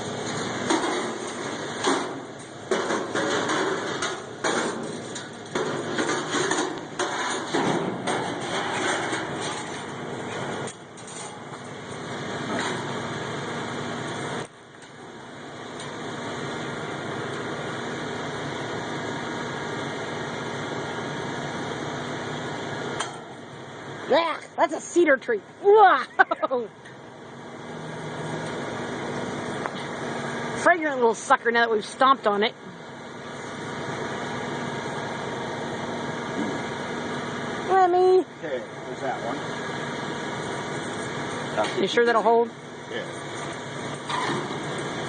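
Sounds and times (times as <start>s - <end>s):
steady low hum: 0.0s - 45.0s
knocks and rattles of fence repair: 0.2s - 13.0s.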